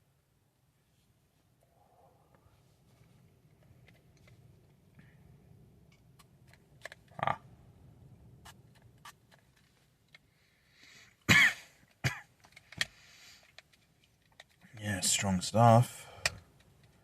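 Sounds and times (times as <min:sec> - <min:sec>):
man coughing: 0:11.3 - 0:12.3.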